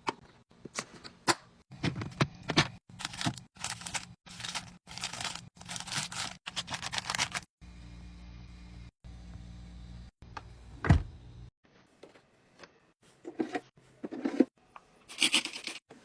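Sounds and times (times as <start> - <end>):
packaging crinkling and scraping: 2.8 - 7.5
steady low hum: 7.6 - 11.5.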